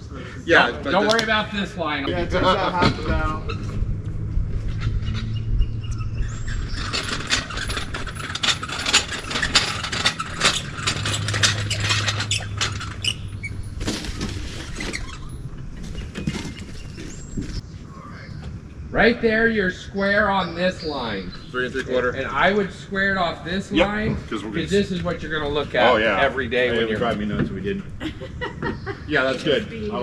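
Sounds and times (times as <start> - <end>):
low machine hum: 0.1 - 30.0
heavy tub creaking and scraping: 2.2 - 17.6.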